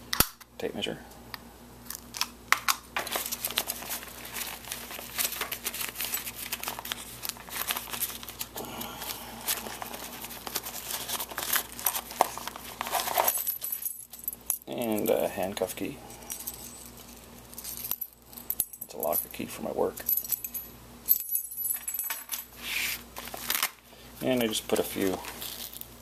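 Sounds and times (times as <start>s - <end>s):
crinkling and rustling: 3.0s - 14.2s, 21.8s - 26.0s.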